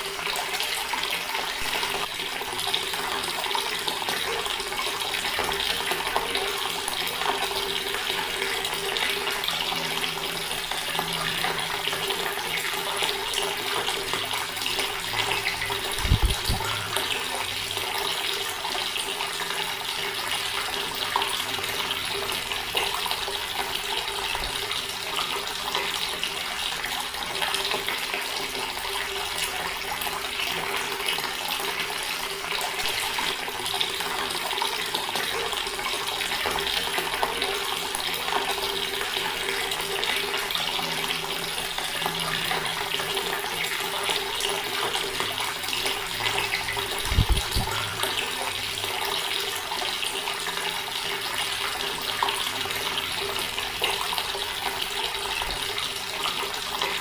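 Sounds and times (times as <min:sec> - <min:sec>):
water running from a tap: 0:00.0 - 0:57.0.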